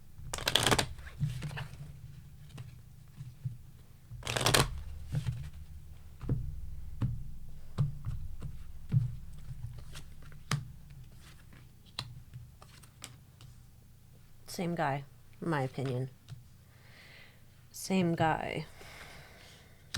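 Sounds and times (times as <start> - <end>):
cards tapping on table: 0.3 - 1.6, 4.2 - 5.4
cards shuffling: 0.3 - 2.8, 4.2 - 5.4, 9.8 - 13.5.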